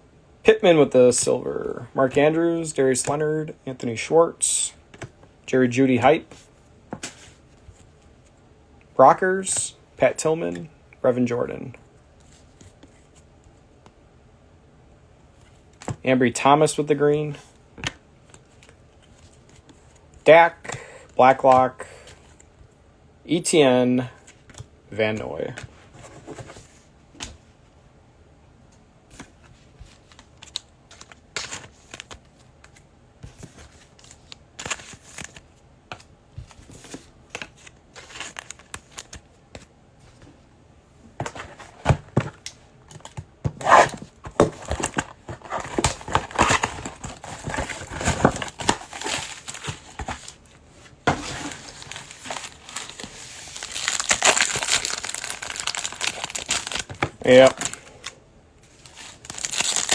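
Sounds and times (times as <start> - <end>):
plastic wrappers crinkling and tearing: 43.6 - 50.4, 51.1 - 59.9.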